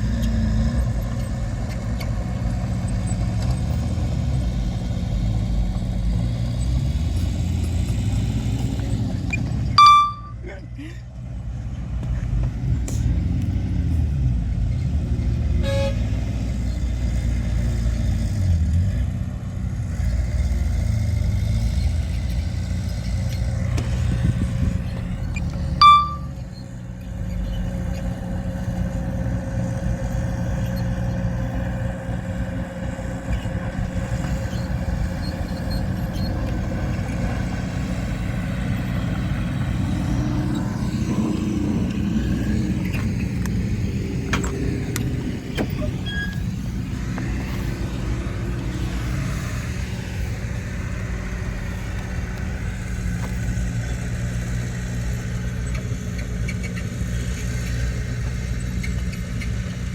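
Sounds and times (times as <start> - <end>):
heavy machinery diesel rumble: 0.0 - 59.9
high horn beep: 9.7 - 10.4, 15.6 - 16.2, 25.8 - 26.5
faint short tone: 9.8 - 10.4, 25.8 - 26.5.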